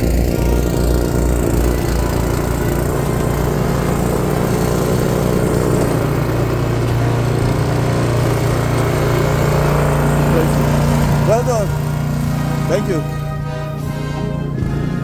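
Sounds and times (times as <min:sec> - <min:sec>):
snowblower engine running: 0:00.0 - 0:15.0.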